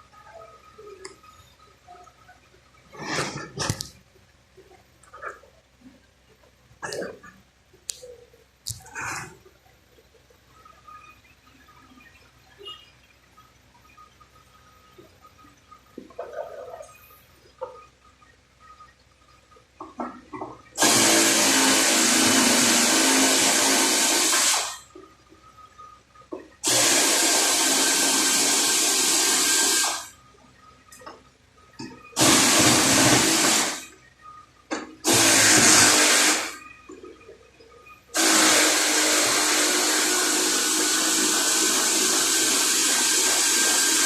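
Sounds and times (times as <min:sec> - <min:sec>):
workshop tool rushing hiss: 0:20.8 - 0:24.8, 0:26.6 - 0:30.1, 0:32.2 - 0:33.9, 0:35.0 - 0:36.6, 0:38.2 - 0:44.0.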